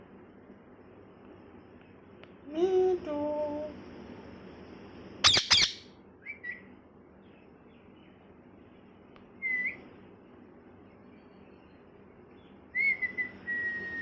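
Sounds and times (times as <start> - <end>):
parrot screeching: 5.2 - 5.9
parrot chirping: 5.2 - 6.7.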